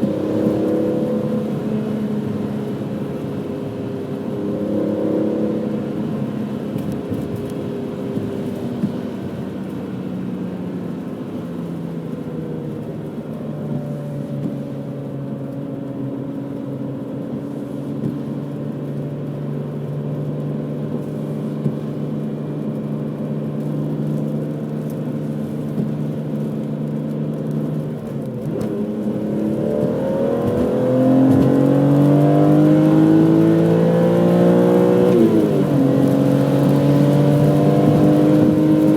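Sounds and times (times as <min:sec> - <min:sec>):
car engine revving: 0:27.4 - 0:38.9.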